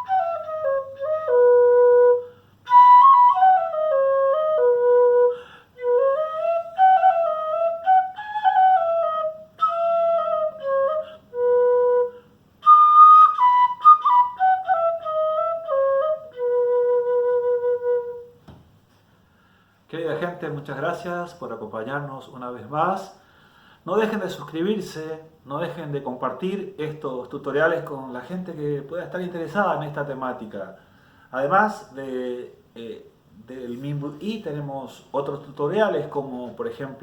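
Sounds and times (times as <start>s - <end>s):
small cane flute melody: 0.0s - 18.5s.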